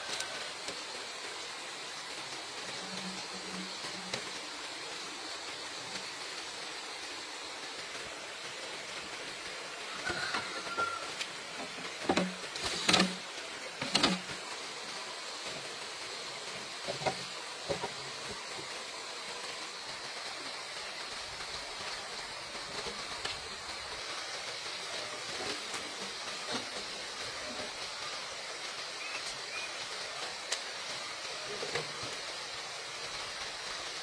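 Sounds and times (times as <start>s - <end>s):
steady hiss: 0.0s - 34.0s.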